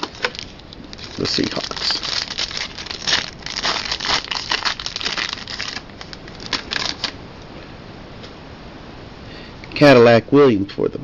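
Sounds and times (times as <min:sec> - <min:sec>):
faint hiss: 0:07.3 - 0:10.9.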